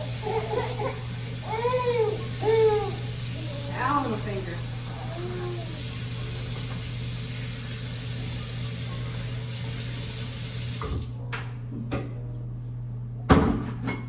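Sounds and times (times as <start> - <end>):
tap water running: 0.0 - 11.2.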